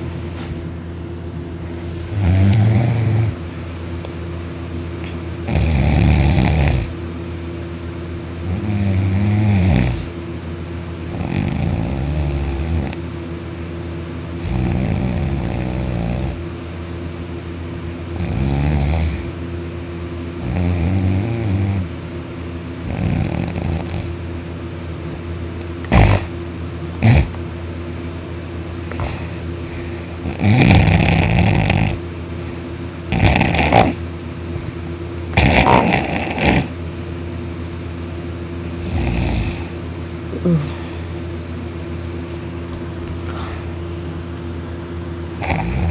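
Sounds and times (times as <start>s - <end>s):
steady low hum: 0.0s - 45.9s
loud open-mouthed snoring: 1.8s - 3.4s, 5.4s - 7.0s, 8.4s - 10.2s, 11.1s - 13.0s, 14.4s - 16.4s, 18.2s - 19.4s, 20.4s - 21.9s, 22.8s - 24.2s, 25.8s - 26.3s, 27.0s - 27.4s, 28.9s - 32.0s, 33.1s - 34.0s, 35.3s - 36.8s, 38.8s - 39.8s, 45.4s - 45.9s.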